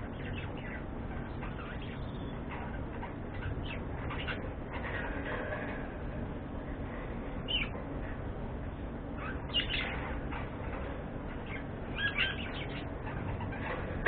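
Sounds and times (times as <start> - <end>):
budgerigars chirping: 0.0 - 4.5, 9.2 - 10.2, 11.4 - 13.7
low background noise: 0.0 - 14.0.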